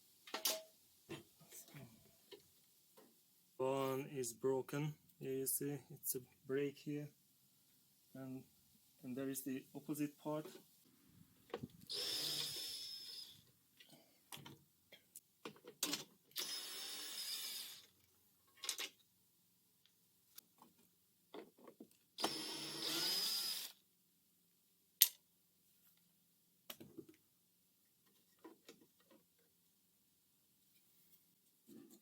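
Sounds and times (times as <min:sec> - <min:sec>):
handheld power tool whining: 0:11.9 - 0:13.4, 0:16.4 - 0:17.9, 0:22.2 - 0:23.8
clicks and knocks of parts: 0:18.5 - 0:19.0.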